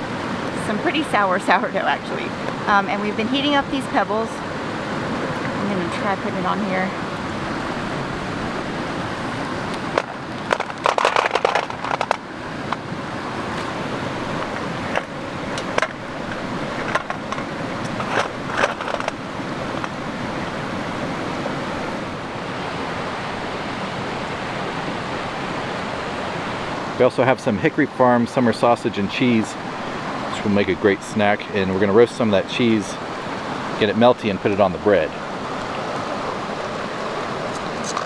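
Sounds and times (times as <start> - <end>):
creek rushing: 0.0 - 38.0
sharp clicks and knocks: 9.9 - 12.8, 14.9 - 20.0.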